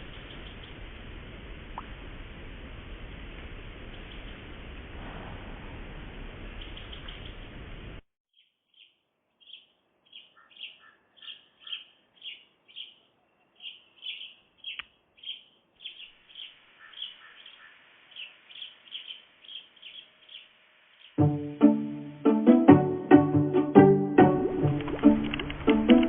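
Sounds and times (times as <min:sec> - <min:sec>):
small birds chirping: 0:00.0 - 0:00.8, 0:03.8 - 0:04.5, 0:06.5 - 0:07.6, 0:08.3 - 0:21.2.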